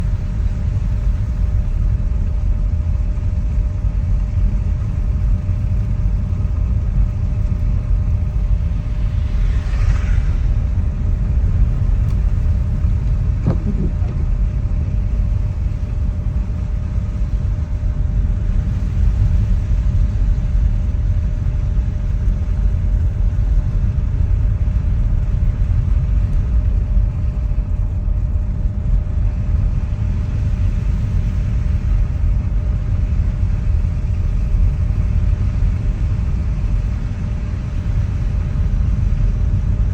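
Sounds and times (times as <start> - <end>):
tyre and road rumble: 8.1 - 15.8
faint swish: 8.6 - 11.4.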